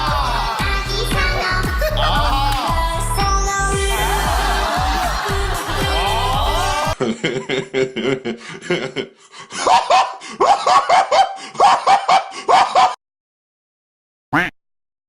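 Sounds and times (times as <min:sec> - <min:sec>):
music: 0:00.0 - 0:07.0
person laughing: 0:01.7 - 0:02.8, 0:03.9 - 0:13.0.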